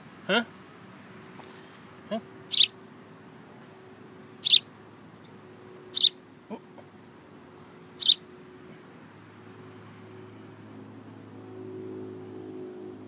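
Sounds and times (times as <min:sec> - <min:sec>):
baby bird high calls: 0:02.5 - 0:02.8, 0:04.4 - 0:04.7, 0:05.9 - 0:06.2, 0:08.0 - 0:08.2.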